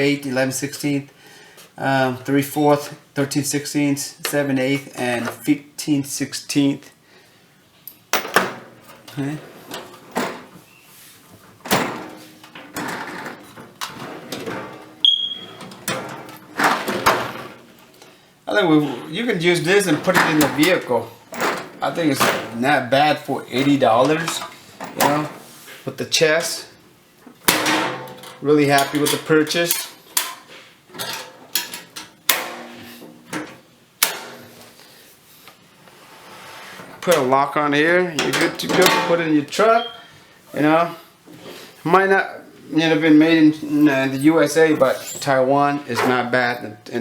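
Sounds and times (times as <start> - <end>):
metal tool chest clanking: 8.1 - 10.6, 11.4 - 18.0, 19.6 - 25.4, 27.4 - 34.6, 38.2 - 39.8, 43.6 - 46.7
metal drawers sliding open and shut: 8.1 - 18.1, 19.6 - 25.6, 27.3 - 34.8, 36.0 - 37.4, 38.2 - 39.9, 43.0 - 46.5.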